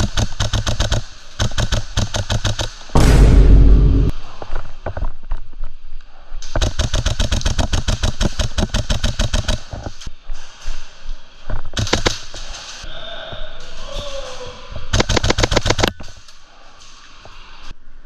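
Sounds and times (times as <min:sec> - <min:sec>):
airsoft rifle firing bursts: 0:00.0 - 0:02.8, 0:06.5 - 0:09.7, 0:14.9 - 0:15.9.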